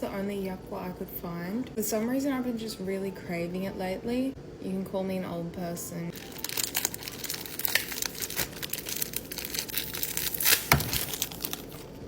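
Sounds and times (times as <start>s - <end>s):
crinkly packaging being torn open: 6.2s - 12.0s.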